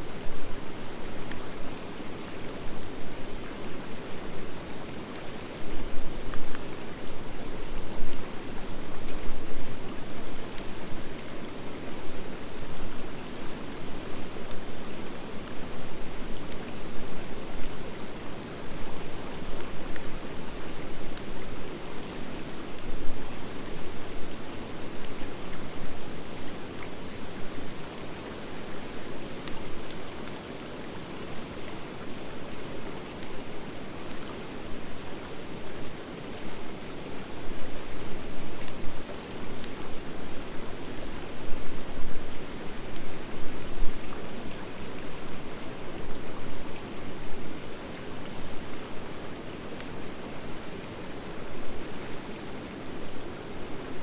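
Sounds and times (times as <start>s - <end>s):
campfire burning: 33.1s - 34.8s.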